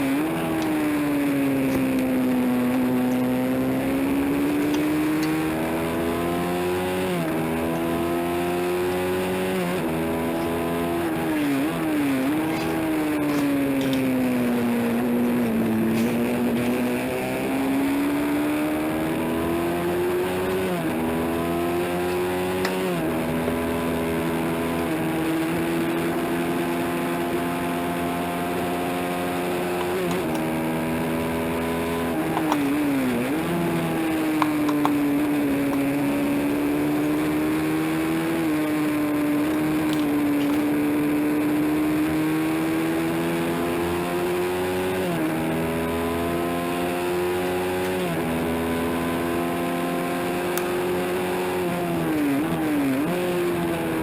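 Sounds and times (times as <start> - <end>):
motorcycle engine revving high: 0.0 - 54.0.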